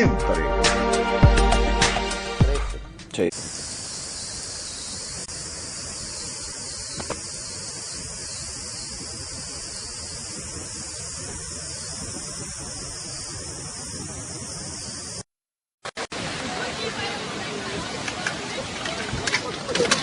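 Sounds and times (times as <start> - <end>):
heavy rain hissing: 3.2 - 15.3.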